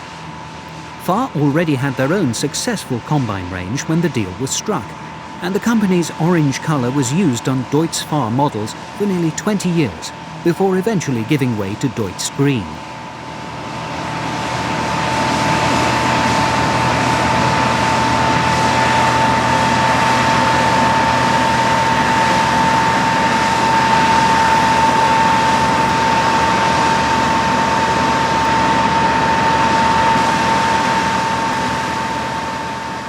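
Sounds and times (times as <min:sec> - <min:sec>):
combine harvester running: 0:00.0 - 0:33.0.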